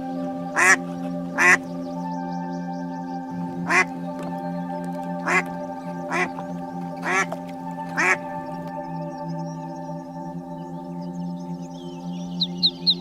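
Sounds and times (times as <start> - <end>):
background music: 0.0 - 13.0
duck quacking: 0.6 - 1.6, 3.7 - 3.9, 6.1 - 6.3, 7.0 - 7.3, 8.0 - 8.2.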